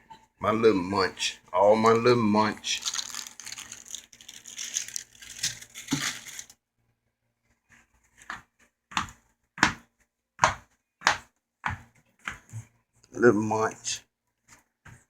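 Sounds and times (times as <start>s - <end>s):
rustling: 1.9s - 6.6s
crunchy snack chewing: 2.7s - 6.5s.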